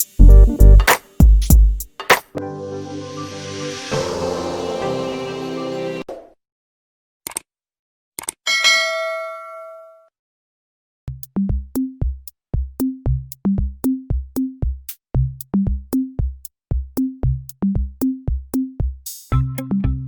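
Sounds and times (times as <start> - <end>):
electronic drum machine beat: 0.0 - 2.2, 11.1 - 20.0.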